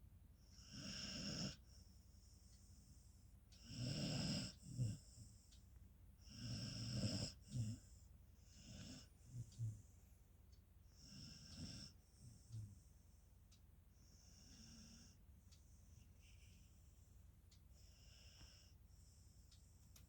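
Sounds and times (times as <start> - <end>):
dog snoring: 0.5 - 5.5, 6.2 - 10.0, 10.9 - 12.9, 14.0 - 15.2.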